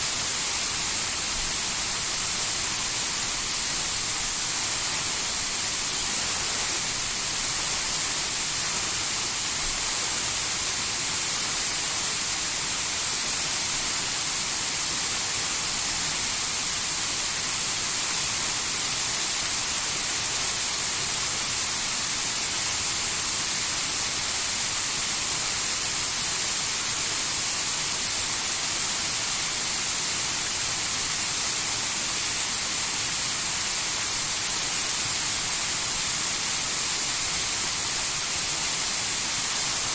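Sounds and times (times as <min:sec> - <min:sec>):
waterfall pouring into pool: 0:00.0 - 0:39.9.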